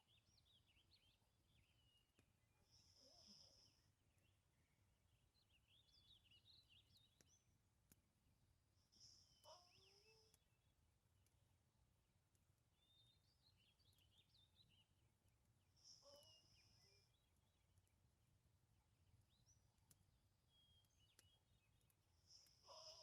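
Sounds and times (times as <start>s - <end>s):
faint high chirps: 0.0s - 7.5s, 8.8s - 10.7s, 15.7s - 17.8s, 19.3s - 23.0s
faint low hum: 0.0s - 23.0s
light ticks: 6.8s - 8.1s, 19.3s - 23.0s.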